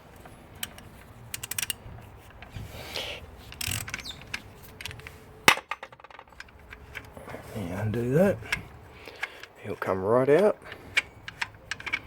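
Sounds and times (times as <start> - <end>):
socket ratchet clicking: 0.6 - 1.8, 3.5 - 5.0.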